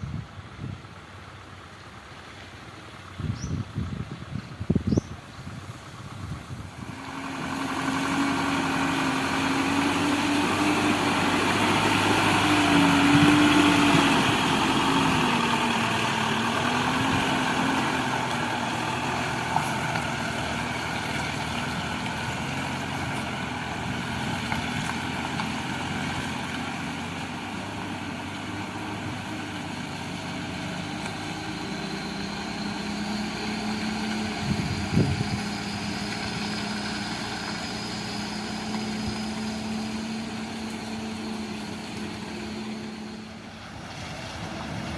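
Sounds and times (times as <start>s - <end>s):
heavy machine engine running: 0.1s - 44.9s
faint high whine: 31.4s - 43.6s.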